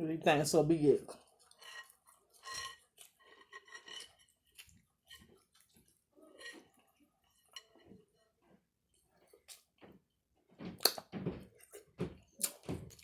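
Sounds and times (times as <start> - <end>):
wet chewing and mouth clicks: 1.1 - 8.0, 8.9 - 9.8, 10.7 - 13.0.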